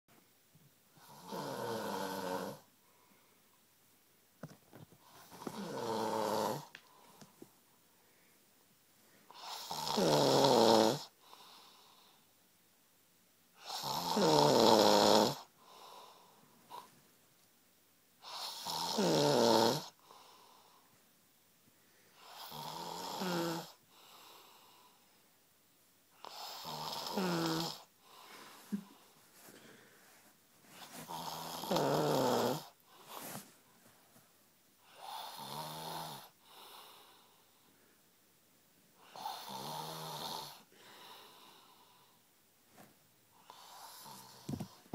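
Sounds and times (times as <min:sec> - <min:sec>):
man snoring loudly: 0:01.0 - 0:02.7, 0:05.2 - 0:06.7, 0:09.4 - 0:11.1, 0:13.6 - 0:15.5, 0:18.2 - 0:20.0, 0:22.2 - 0:23.8, 0:26.2 - 0:27.9, 0:31.0 - 0:32.8, 0:34.9 - 0:36.8, 0:39.0 - 0:40.7.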